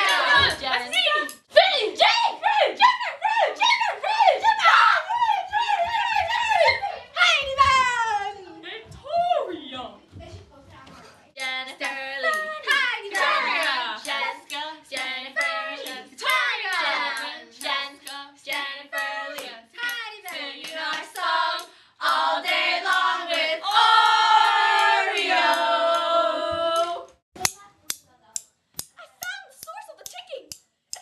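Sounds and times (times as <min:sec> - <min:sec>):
voices singing a cappella: 0:00.0 - 0:01.2, 0:11.4 - 0:27.2
sharp rhythmic clicks: 0:11.4 - 0:23.4, 0:26.8 - 0:31.0.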